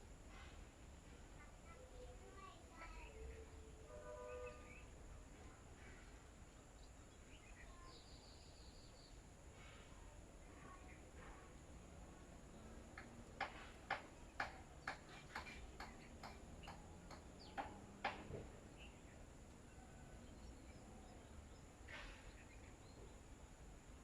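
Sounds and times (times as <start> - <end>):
birds pecking taps: 12.9 - 18.4.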